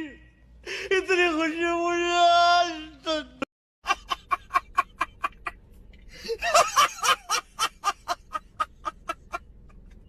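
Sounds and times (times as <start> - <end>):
person laughing in bursts: 3.8 - 5.5, 6.2 - 9.4.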